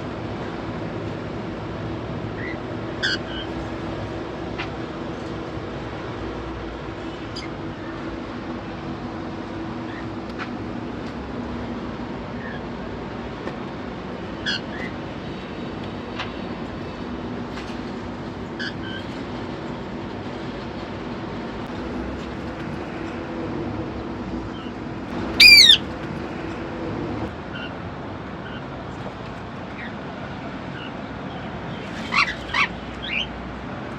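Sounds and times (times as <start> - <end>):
steady low hum: 0.0 - 29.1
cockatiels chirping: 25.4 - 25.8.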